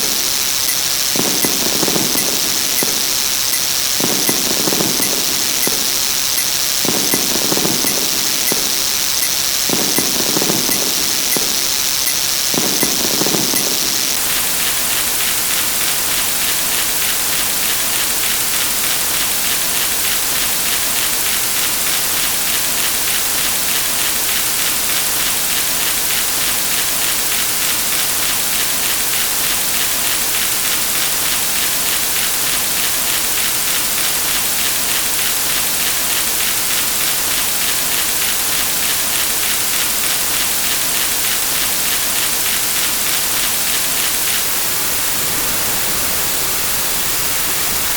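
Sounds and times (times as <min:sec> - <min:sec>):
steady loud hiss: 0:00.0 - 0:47.9.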